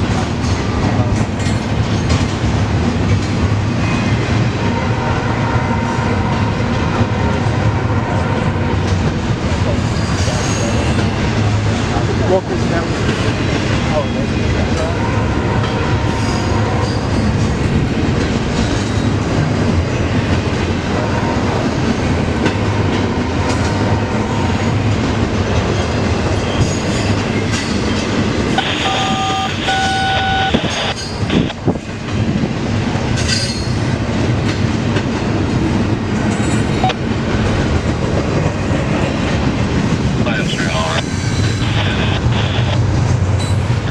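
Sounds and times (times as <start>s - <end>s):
freight train wheels clacking: 0.0s - 43.9s
two-part tone: 28.6s - 31.5s.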